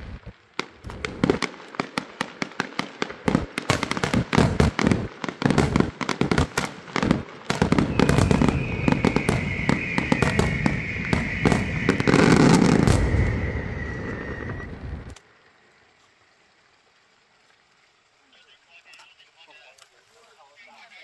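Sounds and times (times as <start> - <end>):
fireworks and firecrackers banging: 0.0 - 15.2
high steady whistle: 7.6 - 15.2.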